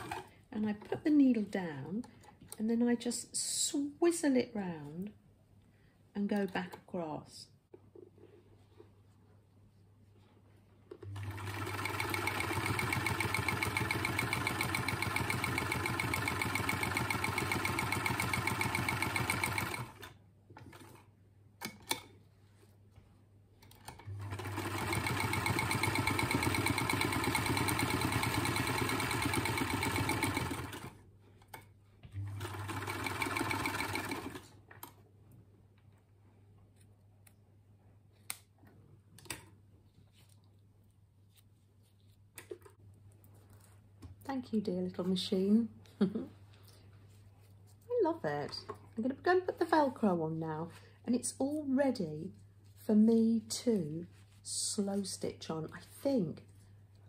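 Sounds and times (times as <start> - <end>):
sewing machine stitching: 0.0 - 0.3, 11.0 - 21.0, 23.8 - 31.0, 32.2 - 34.5.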